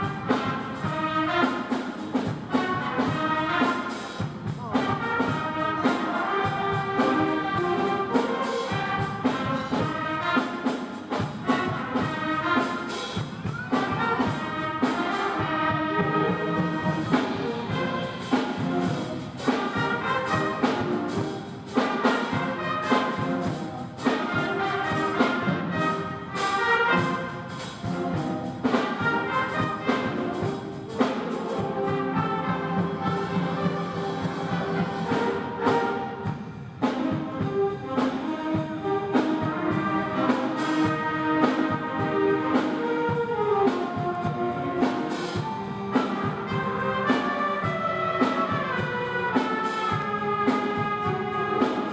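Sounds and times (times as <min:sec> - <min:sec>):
brass: 0:00.0 - 0:51.9
concert band playing: 0:00.0 - 0:51.9
percussion strikes: 0:00.0 - 0:51.9.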